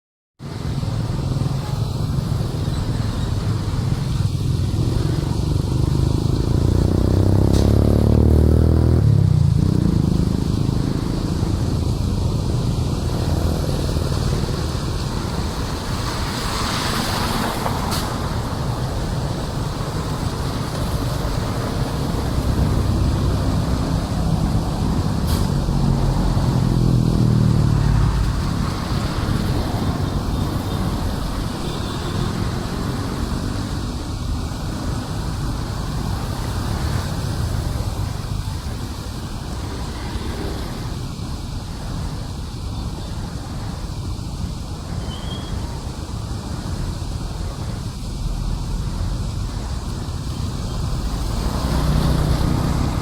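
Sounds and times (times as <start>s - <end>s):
road traffic passing: 0.4s - 53.0s
vehicle engine passing by: 1.0s - 41.6s, 50.0s - 53.0s.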